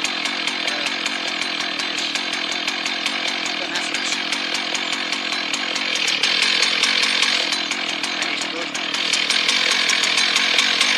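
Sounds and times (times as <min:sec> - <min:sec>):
two-stroke chainsaw running: 0:00.0 - 0:10.9.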